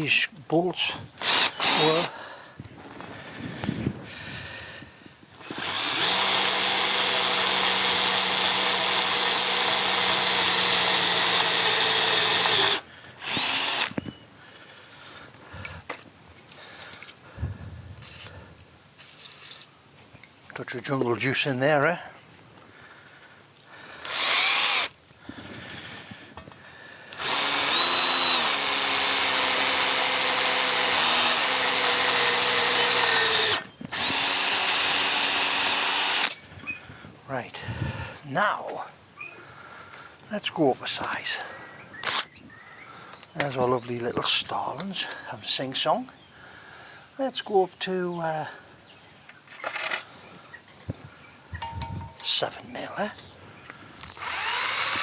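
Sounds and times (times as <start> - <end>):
electric drill boring metal: 1.2 - 2.1, 5.4 - 14.0, 24.0 - 24.9, 27.1 - 36.4, 54.1 - 55.0.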